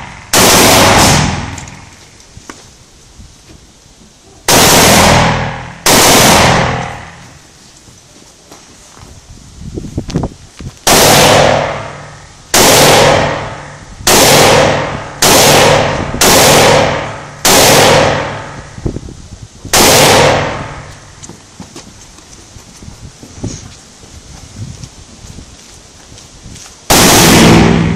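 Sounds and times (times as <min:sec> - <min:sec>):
rifle shots with echo: 0:00.0 - 0:01.9, 0:04.5 - 0:07.3, 0:10.9 - 0:18.7, 0:19.7 - 0:20.9, 0:26.9 - 0:27.9.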